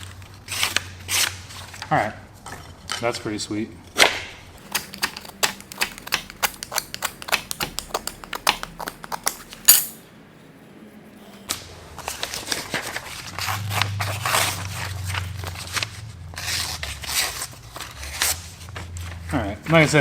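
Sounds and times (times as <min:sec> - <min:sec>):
knife slicing paper: 0:04.6 - 0:09.7.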